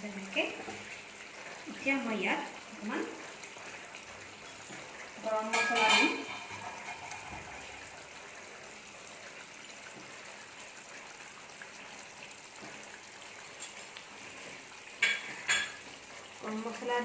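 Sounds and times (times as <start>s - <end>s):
curry sizzling in oil: 0.0s - 17.0s.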